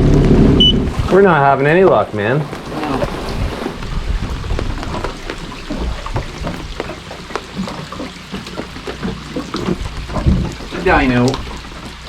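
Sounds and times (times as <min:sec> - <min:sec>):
steady low rumble: 0:00.0 - 0:07.4
raindrops ticking: 0:00.0 - 0:12.0.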